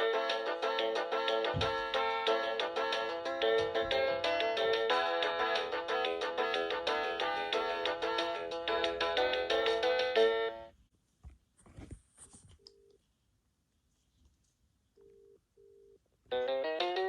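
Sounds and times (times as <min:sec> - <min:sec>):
polyphonic ringtone melody: 0:00.0 - 0:10.7.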